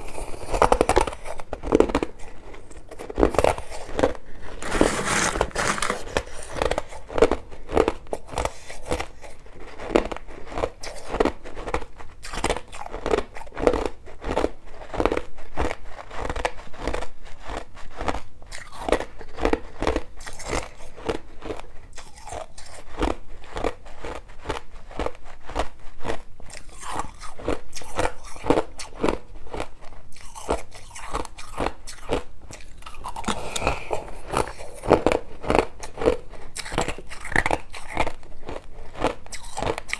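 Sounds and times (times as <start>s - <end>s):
crushed ice crunching: 3.0s - 8.9s.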